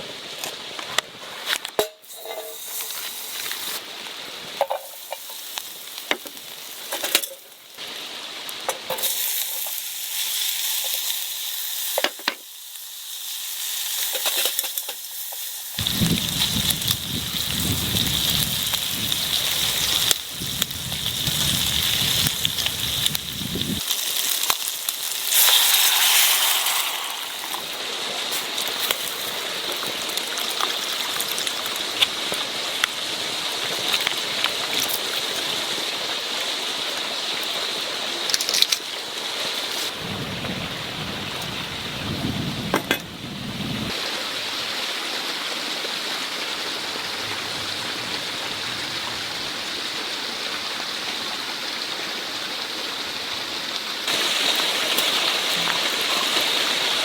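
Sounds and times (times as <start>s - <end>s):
food sizzling in a frying pan: 1.8s - 44.0s, 54.0s - 57.0s.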